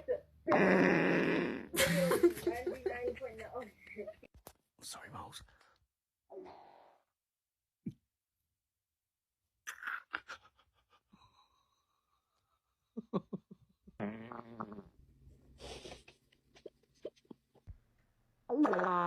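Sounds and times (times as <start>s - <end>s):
fart noises: 0.5s - 1.8s, 14.0s - 15.0s, 18.5s - 19.0s.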